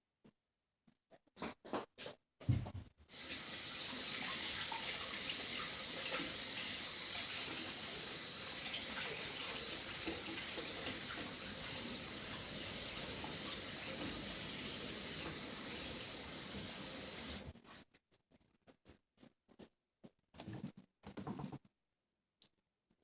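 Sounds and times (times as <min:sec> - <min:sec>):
tap water running into sink: 0:03.1 - 0:17.5.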